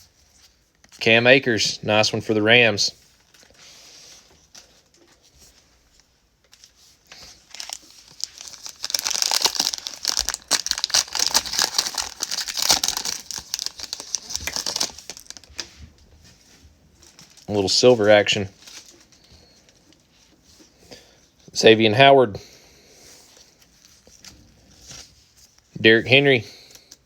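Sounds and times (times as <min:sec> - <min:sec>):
plastic wrapper tearing and crinkling: 0:06.5 - 0:15.7, 0:17.0 - 0:17.6.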